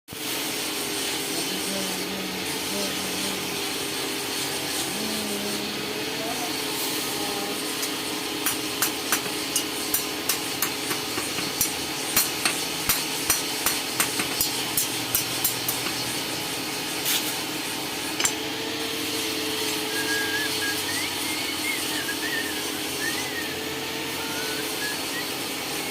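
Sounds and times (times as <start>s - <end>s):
hammer striking metal on anvil: 7.8s - 16.0s.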